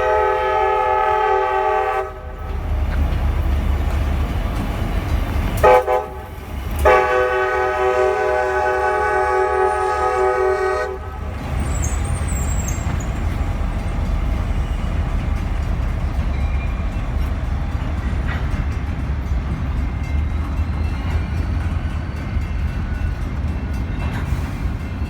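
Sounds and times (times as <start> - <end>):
locomotive air horn chord: 0.0 - 2.6, 5.6 - 11.4
train rumbling past: 0.0 - 25.0.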